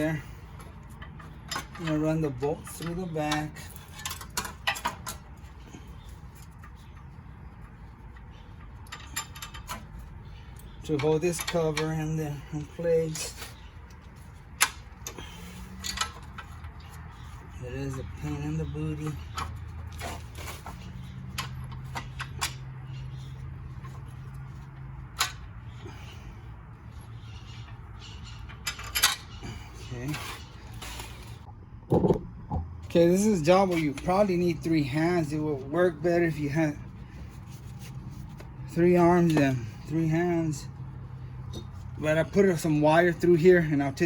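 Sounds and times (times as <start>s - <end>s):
sharp metal clicks and knocks: 0.6s - 5.4s, 8.1s - 12.2s, 13.8s - 17.1s, 18.9s - 23.1s, 23.8s - 25.6s, 27.5s - 29.4s.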